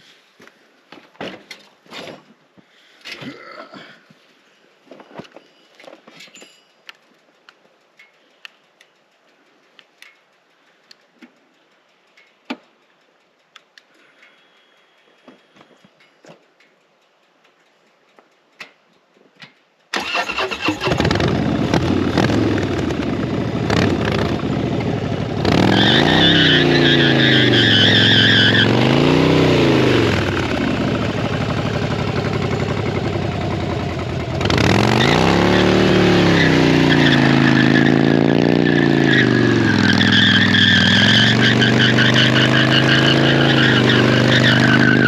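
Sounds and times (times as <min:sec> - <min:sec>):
motorcycle engine running: 0:20.9 - 0:25.8, 0:29.1 - 0:41.5.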